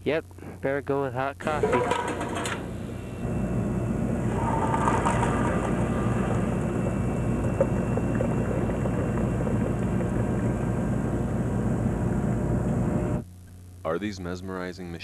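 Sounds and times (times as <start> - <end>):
vending machine humming: 1.4 - 13.2.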